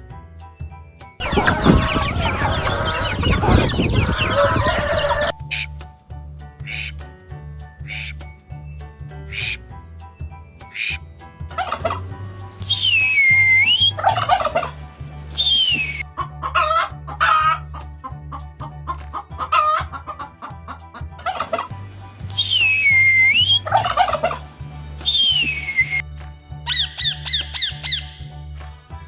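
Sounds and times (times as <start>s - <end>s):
turkey gobbling: 1.2s - 5.4s
steady low beat: 1.2s - 6.8s
swooping whistle: 12.7s - 14.4s, 15.4s - 16.1s, 22.4s - 24.1s, 25.0s - 26.0s, 26.7s - 28.2s.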